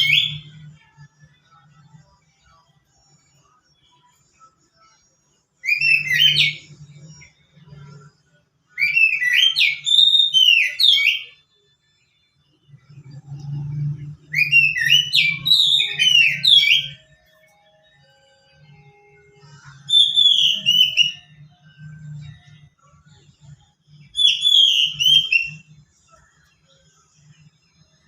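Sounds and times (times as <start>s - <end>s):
songbird whistling: 5.6s - 6.8s, 8.8s - 11.4s, 14.2s - 17.0s, 19.8s - 21.4s, 24.1s - 25.7s.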